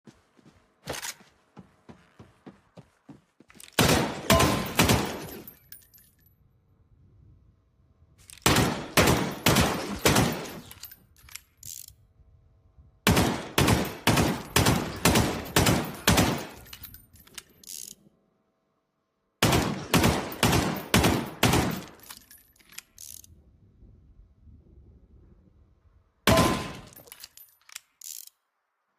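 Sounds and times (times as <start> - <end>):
pistol shots: 3.8 - 5.5, 8.4 - 10.7, 13.1 - 16.6, 19.4 - 22.0, 26.3 - 27.0.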